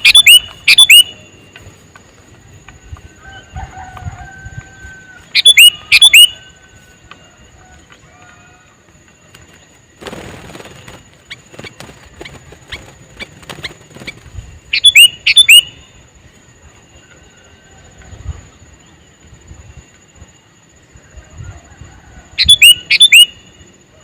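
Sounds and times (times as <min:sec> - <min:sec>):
loud sharp bird calls: 0:00.0 - 0:01.9, 0:03.2 - 0:06.8, 0:10.0 - 0:16.0, 0:22.3 - 0:23.6
bird chirping: 0:00.0 - 0:03.5, 0:05.2 - 0:07.2, 0:09.2 - 0:16.1, 0:22.4 - 0:23.7.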